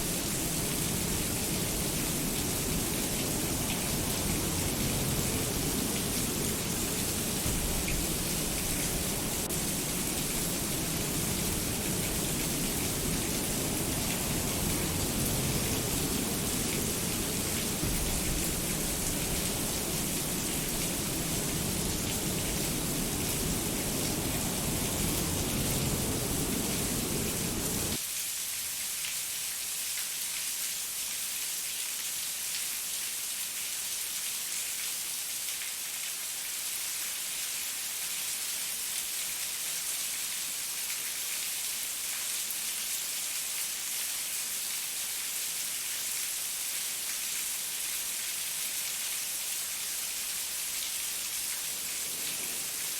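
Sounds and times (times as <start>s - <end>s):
steady rain hiss: 0.0s - 52.9s
deep low rumble: 12.9s - 28.0s.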